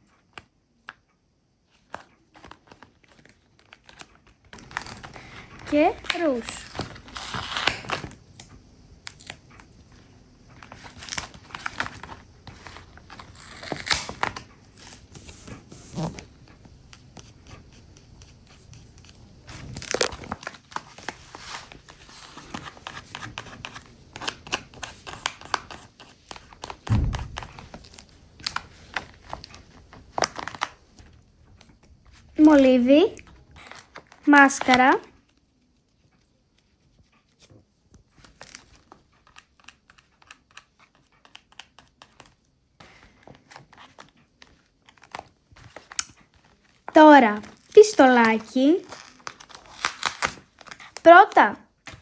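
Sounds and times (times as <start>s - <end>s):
paper rustling and crinkling: 1.8s - 52.0s
soft thump: 26.9s - 27.8s.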